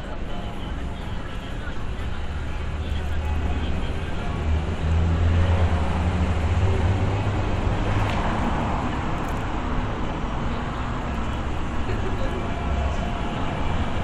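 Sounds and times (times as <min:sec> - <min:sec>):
traffic rumble: 0:00.0 - 0:14.0.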